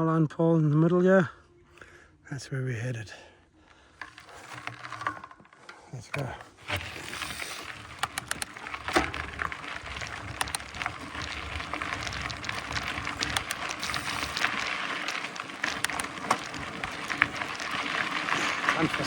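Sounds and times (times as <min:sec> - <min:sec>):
bike tyres on dirt trail: 0:03.6 - 0:19.0
bike clicks and rattles: 0:04.0 - 0:19.0.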